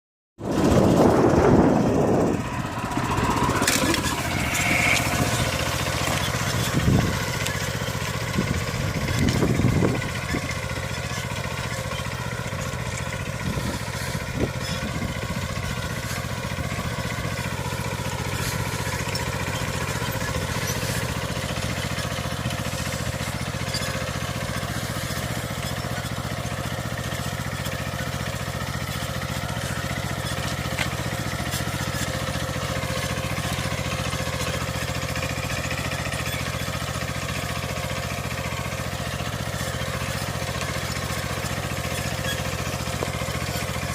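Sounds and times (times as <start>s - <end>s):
cultivator engine running: 0.4s - 43.9s.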